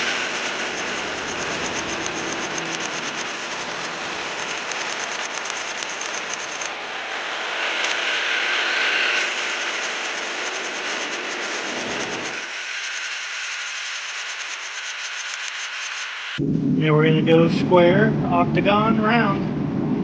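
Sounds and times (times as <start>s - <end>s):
shop machinery rushing noise: 0.0s - 16.4s
low rumble: 16.4s - 20.0s.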